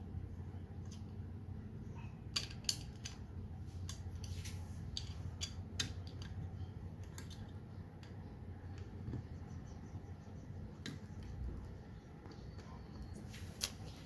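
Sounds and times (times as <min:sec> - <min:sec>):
steady low hum: 0:00.0 - 0:14.0
plastic parts creaking: 0:02.3 - 0:09.3.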